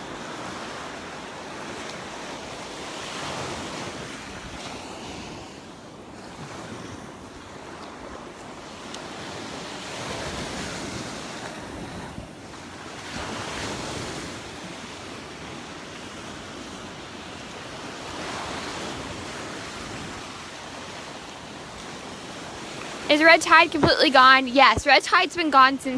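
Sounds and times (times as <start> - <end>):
surf breaking on beach: 0.0 - 25.9
wind buffeting microphone: 21.6 - 25.9.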